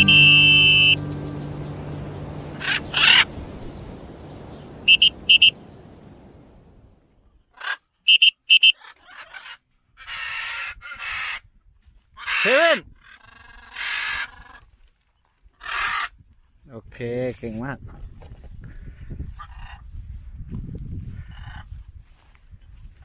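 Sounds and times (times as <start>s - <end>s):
bird harsh squawks: 0.0s - 1.1s, 4.9s - 5.5s, 12.2s - 14.5s
bird high chirps: 0.0s - 6.0s
song music: 0.0s - 6.1s.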